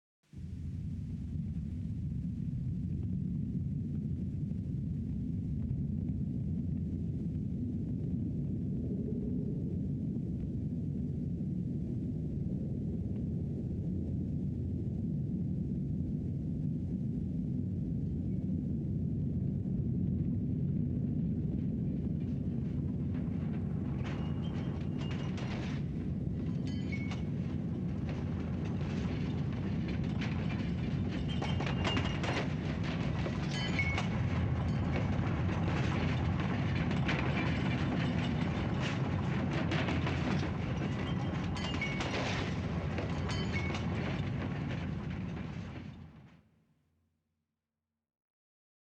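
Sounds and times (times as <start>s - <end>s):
deep rumble: 0.4s - 46.0s
objects rattling and clinking: 23.0s - 46.0s.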